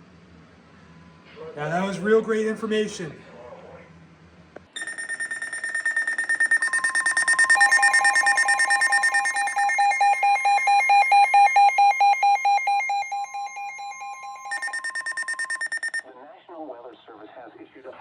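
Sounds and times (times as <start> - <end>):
lower pulsing beep: 4.8 - 16.0
rapid pulsing electronic beeping: 4.8 - 16.0
steady alarm tone: 4.8 - 16.0.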